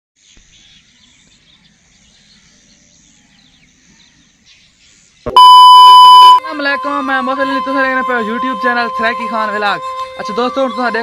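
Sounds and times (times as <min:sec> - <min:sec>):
insects: 0:00.2 - 0:05.2
loud electronic beep: 0:05.3 - 0:06.4.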